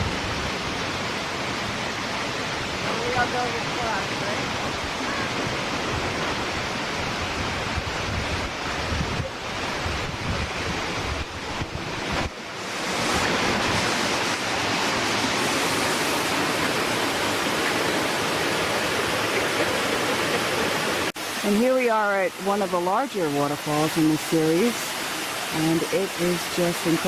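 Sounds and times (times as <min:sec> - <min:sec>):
waterfall rushing: 0:00.0 - 0:27.0
wind buffeting microphone: 0:04.6 - 0:14.3.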